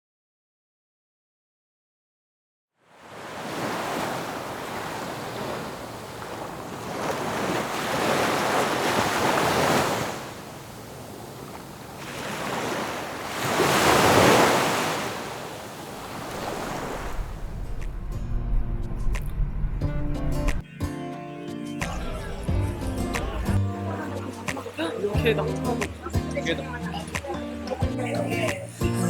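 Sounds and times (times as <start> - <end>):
sea surf breaking: 3.0 - 20.6.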